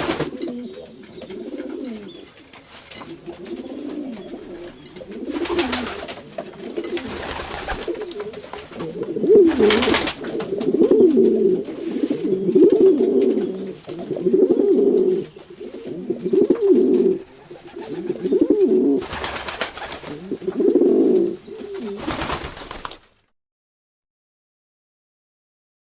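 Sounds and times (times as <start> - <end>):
pigeons cooing: 0.0 - 22.5
rustling bursts: 4.9 - 10.5, 19.0 - 20.2, 22.0 - 23.2.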